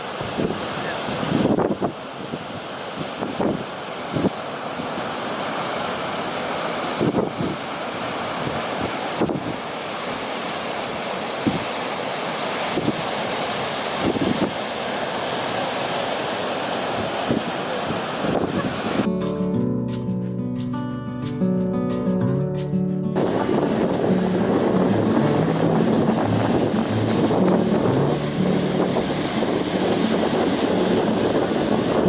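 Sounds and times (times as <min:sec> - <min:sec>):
ocean surf washing: 0:00.0 - 0:20.0, 0:20.6 - 0:32.0
music: 0:19.1 - 0:32.0
wind buffeting microphone: 0:22.6 - 0:32.0.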